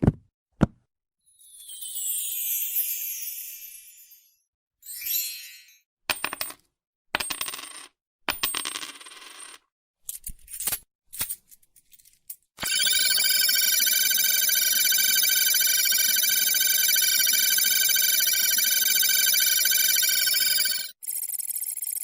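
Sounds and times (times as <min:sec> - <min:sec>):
warbling electronic tone: 0:12.6 - 0:20.9.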